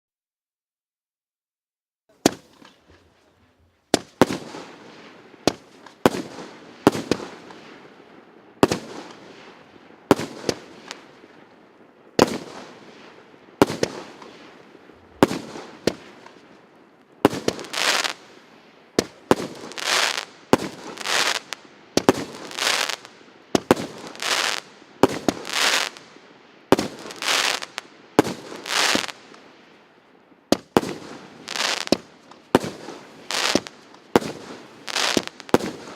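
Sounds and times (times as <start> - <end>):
firework bangs: 3.9 - 11.2, 12.1 - 16.6, 17.2 - 18.3, 18.9 - 26.1, 26.7 - 29.4, 30.5 - 35.9
firework rushing bursts: 30.7 - 35.9.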